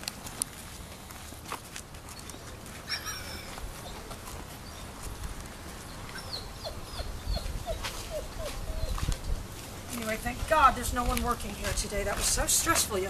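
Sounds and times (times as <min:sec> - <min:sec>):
bird chirp: 0:05.8 - 0:09.0.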